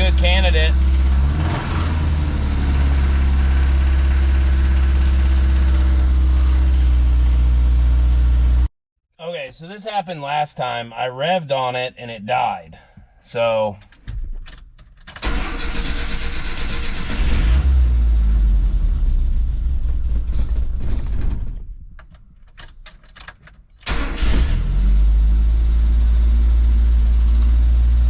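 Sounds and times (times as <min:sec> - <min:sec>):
engine revving: 0:00.0 - 0:08.6, 0:15.2 - 0:19.6, 0:23.9 - 0:28.0
engine cranking and starting: 0:15.0 - 0:17.9, 0:23.8 - 0:24.7.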